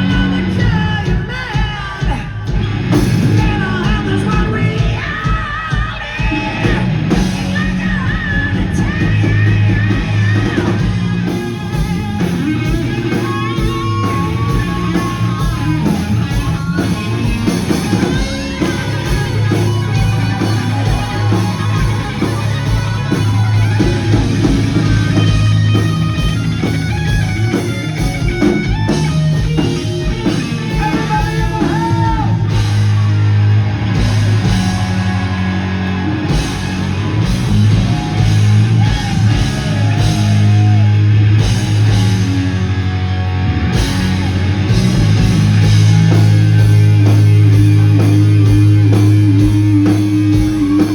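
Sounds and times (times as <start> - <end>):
drum kit: 0.0 - 50.9
electric guitar: 0.0 - 50.9
hard rock music: 0.0 - 50.9
person singing: 30.7 - 32.6, 46.7 - 50.9.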